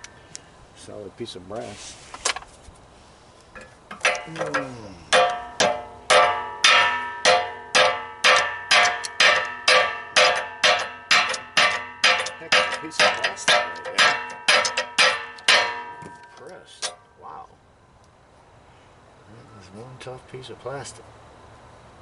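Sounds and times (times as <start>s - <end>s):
hammer striking metal: 3.6s - 17.0s.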